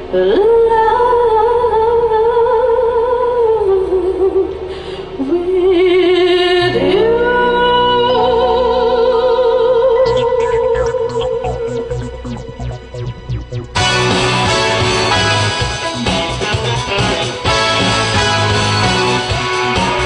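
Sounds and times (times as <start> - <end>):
live band music: 10.0 - 20.0.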